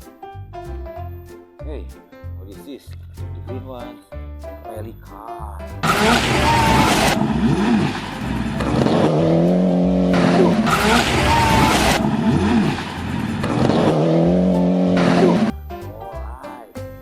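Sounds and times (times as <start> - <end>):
rally car engine running hard: 5.8 - 15.5
rushing tyre noise: 5.8 - 15.5.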